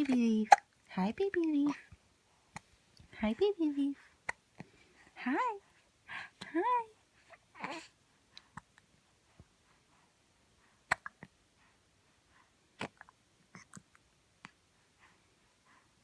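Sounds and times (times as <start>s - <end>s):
baby hiccuping: 0.0s - 0.8s, 10.9s - 11.3s.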